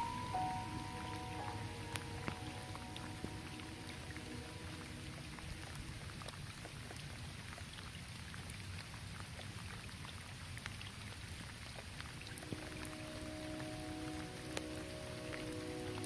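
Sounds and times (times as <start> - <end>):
soft sustained music tones: 0.0 - 6.8, 12.2 - 16.0
light rain on a roof: 0.0 - 16.0.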